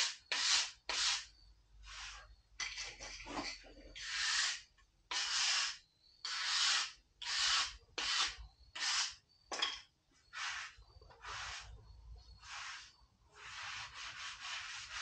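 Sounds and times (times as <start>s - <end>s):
rough rasping rubbing strokes: 4.0s - 9.2s, 10.2s - 15.0s.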